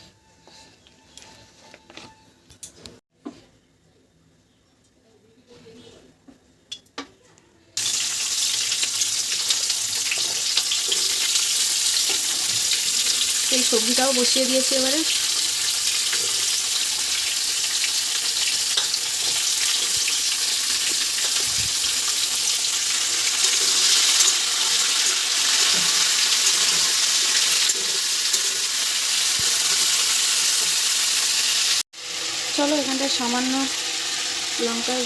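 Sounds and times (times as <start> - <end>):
vegetables sizzling in hot oil: 7.8 - 35.0.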